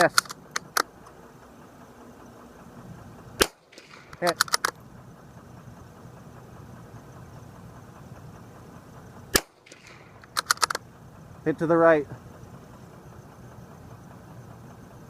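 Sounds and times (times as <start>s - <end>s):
sharp clicks: 0.0s - 1.2s, 3.4s - 4.9s, 9.3s - 10.9s
rifle shot: 3.4s - 4.8s, 9.3s - 10.8s.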